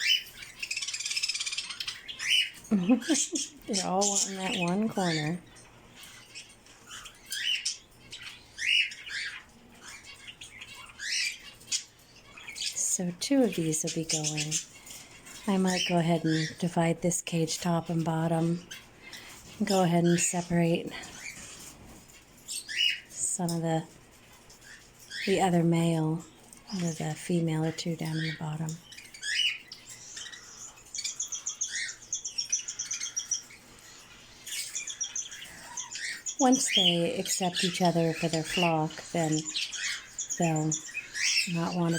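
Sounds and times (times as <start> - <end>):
budgerigars chirping and squawking: 0.0 - 41.9.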